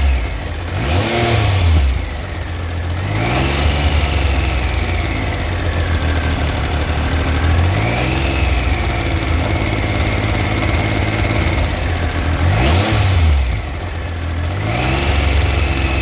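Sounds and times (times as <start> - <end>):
engine ticking: 0.0 - 16.0
motorcycle engine revving: 0.0 - 16.0.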